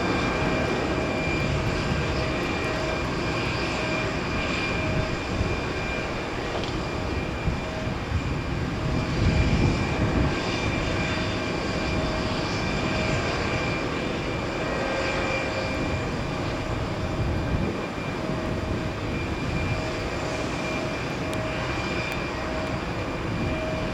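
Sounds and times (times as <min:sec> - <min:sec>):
propeller aircraft engine drone: 0:00.0 - 0:23.9.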